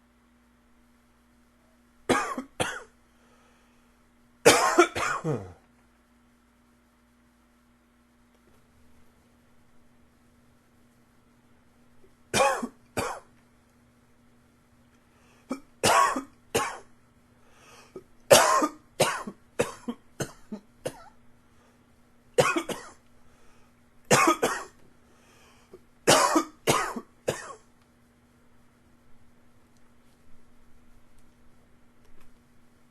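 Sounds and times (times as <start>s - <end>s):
man coughing: 2.1s - 2.9s, 4.5s - 5.6s, 12.4s - 13.2s, 18.3s - 21.1s, 22.4s - 23.0s, 24.1s - 24.7s, 26.1s - 27.6s.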